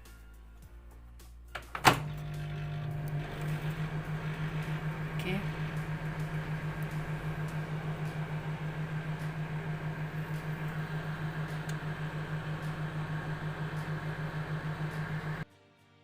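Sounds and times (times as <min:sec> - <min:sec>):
microwave oven humming: 0:01.6 - 0:15.4
fan noise: 0:01.8 - 0:15.4.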